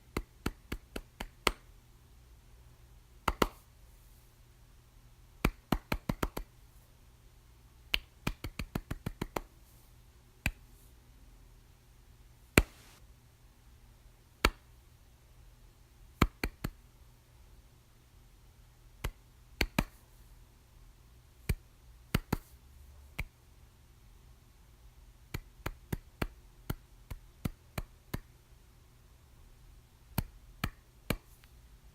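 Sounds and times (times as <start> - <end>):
soft hand claps: 3.3 - 3.6, 5.4 - 6.5, 7.9 - 9.5, 12.6 - 12.8, 16.2 - 16.8, 19.0 - 20.0, 21.5 - 22.5, 25.3 - 28.3, 30.2 - 31.5.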